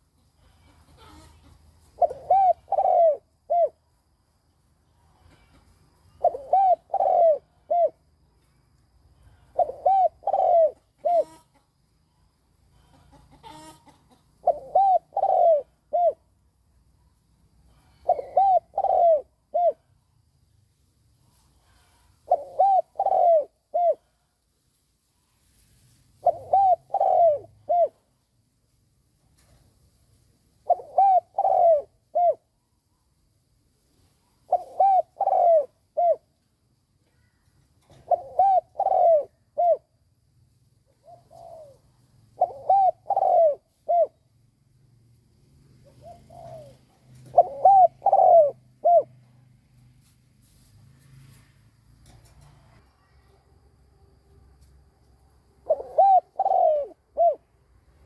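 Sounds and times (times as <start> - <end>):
dove cooing: 0.6 - 3.9, 5.3 - 8.2, 9.3 - 11.6, 12.9 - 16.4, 17.8 - 20.0, 21.8 - 24.3, 26.2 - 28.1, 30.6 - 32.6, 34.4 - 36.4, 37.2 - 40.1, 40.9 - 44.3, 45.8 - 49.4, 55.6 - 57.5.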